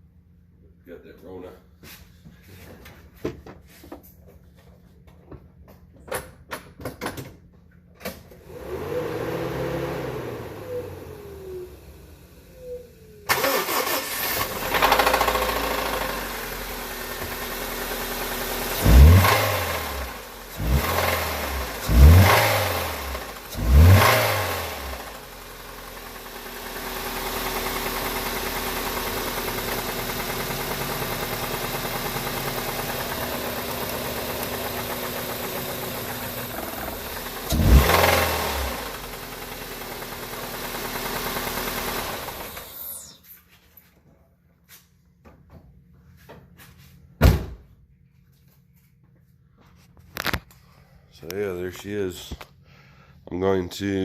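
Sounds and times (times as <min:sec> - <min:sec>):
car engine starting and revving: 0:08.4 - 0:43.1.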